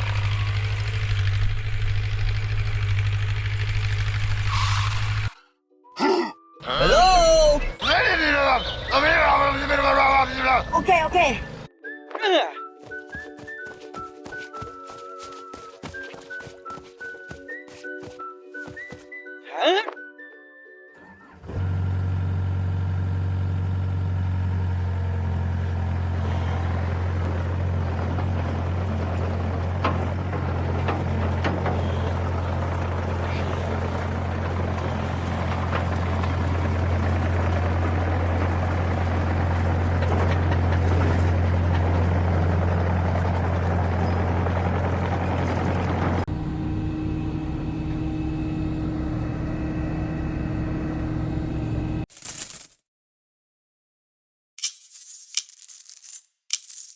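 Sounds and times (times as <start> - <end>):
tractor engine droning: 0.0 - 5.4, 6.6 - 11.7, 21.0 - 52.0.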